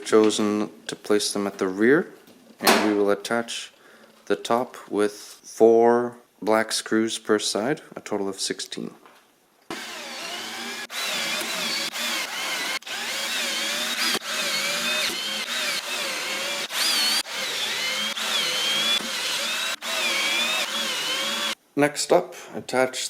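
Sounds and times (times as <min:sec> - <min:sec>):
power drill driving screws: 0:09.7 - 0:21.6.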